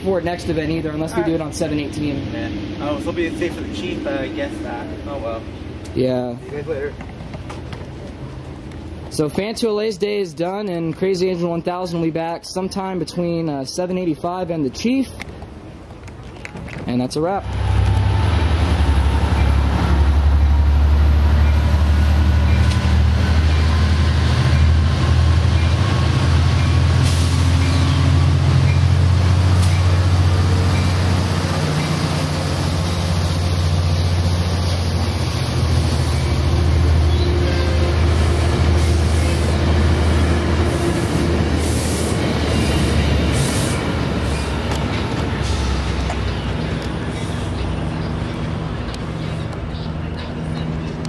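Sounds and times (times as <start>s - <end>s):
locomotive engine rumble: 0.0s - 9.6s, 15.3s - 51.0s
rail noise: 0.0s - 51.0s.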